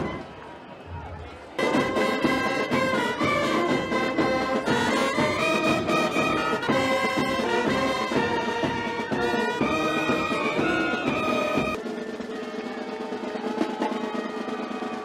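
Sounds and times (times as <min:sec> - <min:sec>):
brass music playing held notes: 0:01.6 - 0:12.8.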